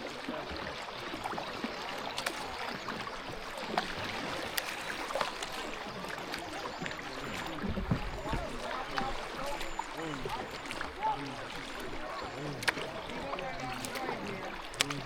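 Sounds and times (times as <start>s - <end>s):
water splashing around paddle: 0.0s - 15.0s.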